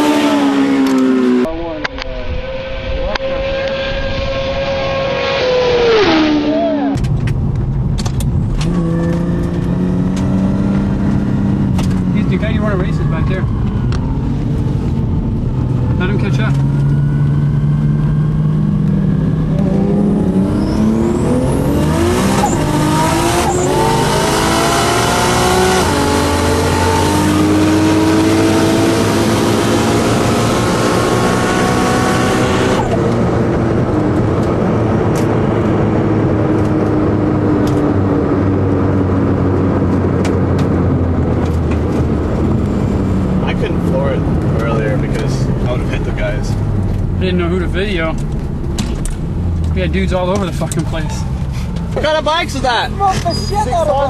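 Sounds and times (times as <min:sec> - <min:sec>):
engine revving at full throttle: 0:00.0 - 0:01.5, 0:02.4 - 0:07.0, 0:08.6 - 0:12.4, 0:15.8 - 0:40.0.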